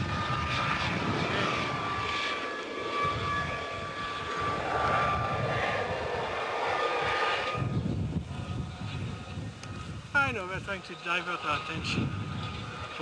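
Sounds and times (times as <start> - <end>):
helicopter flying close by: 0.0 - 13.0.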